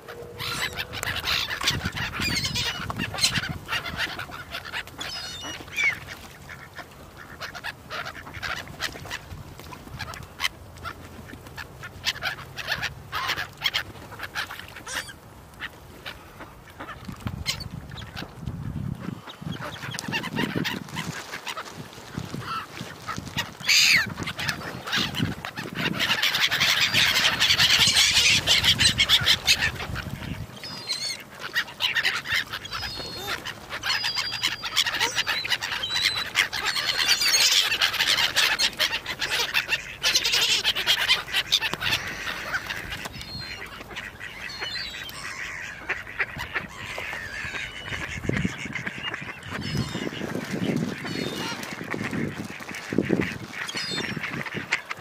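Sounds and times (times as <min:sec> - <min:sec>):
ducks and waterbirds calling: 0:00.0 - 0:55.0.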